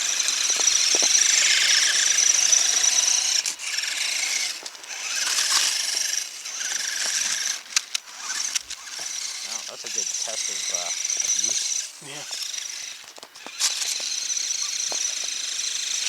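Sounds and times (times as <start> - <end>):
electric motor whining: 0.0 - 16.0.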